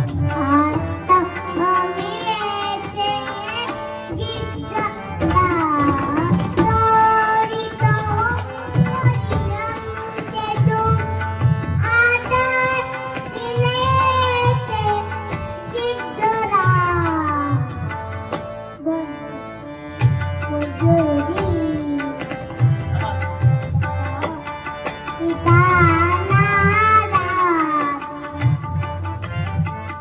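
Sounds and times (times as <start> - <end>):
tabla rhythm: 0.0 - 30.0
girl singing: 0.1 - 11.2, 11.8 - 17.6, 20.5 - 22.2, 25.2 - 28.4.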